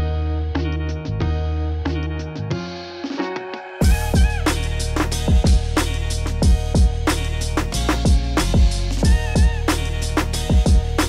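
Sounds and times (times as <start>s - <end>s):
soft instrumental music: 0.0s - 11.0s
kick drum and bass beat: 3.8s - 11.0s.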